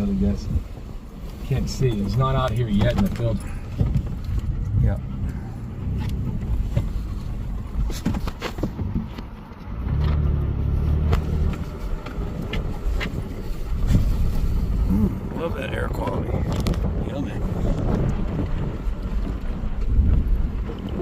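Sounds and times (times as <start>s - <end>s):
vehicle engine low rumble: 0.0s - 21.0s.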